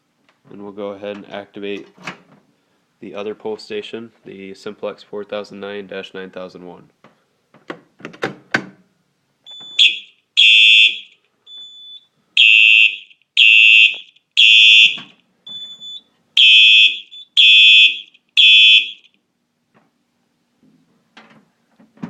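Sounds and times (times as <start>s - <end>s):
electronic alarm horn blasts: 9.7s - 11.1s, 12.4s - 15.1s, 16.4s - 19.1s
faint steady beep: 11.4s - 12.2s, 15.5s - 16.1s.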